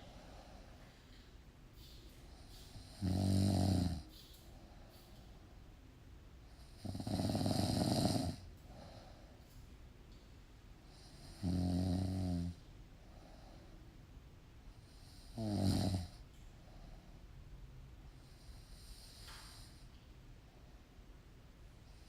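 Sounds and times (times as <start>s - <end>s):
loud rasping snores: 2.7s - 4.1s, 6.6s - 8.4s, 11.0s - 12.6s, 15.0s - 16.2s.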